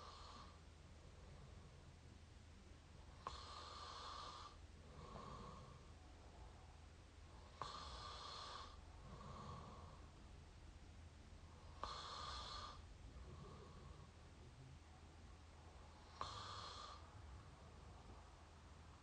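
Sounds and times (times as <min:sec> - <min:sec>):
person snoring: 0:03.2 - 0:05.8, 0:07.5 - 0:10.0, 0:11.7 - 0:14.1, 0:16.0 - 0:17.1.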